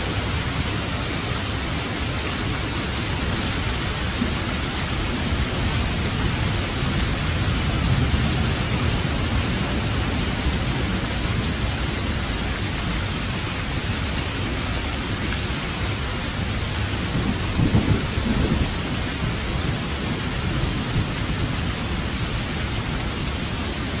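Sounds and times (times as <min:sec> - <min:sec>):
heavy rain falling: 0:00.0 - 0:24.0
rolling thunder: 0:17.0 - 0:21.6.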